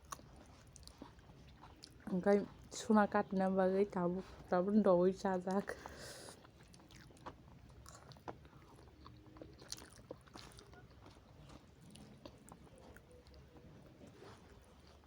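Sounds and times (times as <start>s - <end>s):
people chewing noodles: 0.0s - 4.6s, 5.4s - 15.0s
small mouth clicks and smacks: 5.8s - 15.0s.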